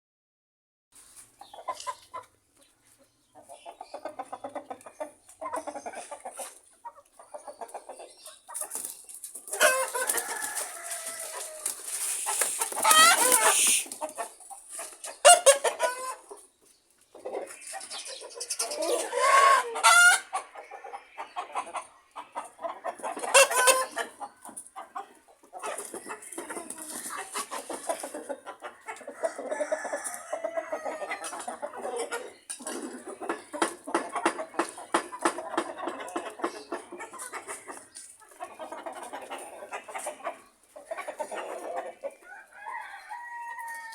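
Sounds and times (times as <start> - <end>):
chickens clucking: 1.0 - 43.9
rooster crowing: 9.7 - 11.8, 42.3 - 43.9.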